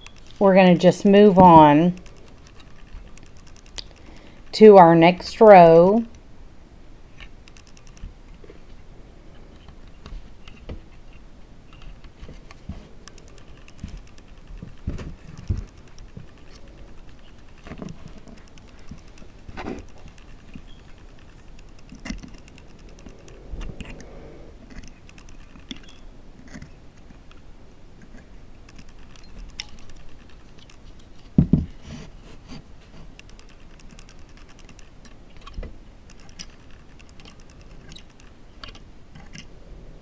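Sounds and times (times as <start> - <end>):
loom hook clicking and tapping: 24.7 - 27.3, 33.1 - 39.4.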